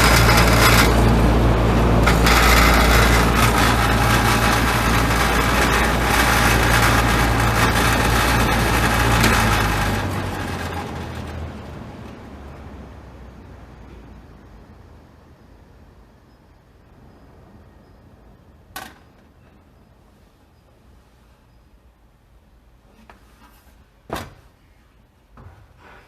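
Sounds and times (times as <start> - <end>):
fan blades spinning down: 0.0 - 13.2
ventilation fan running: 0.0 - 13.5.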